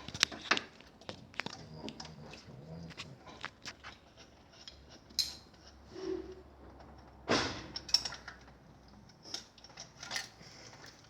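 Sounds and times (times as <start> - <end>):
metal tools clinking and knocking: 7.7 - 8.5.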